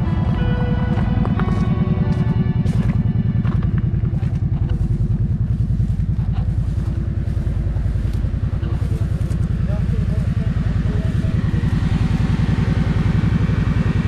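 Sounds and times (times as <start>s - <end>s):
utility vehicle engine running: 0.0s - 14.0s.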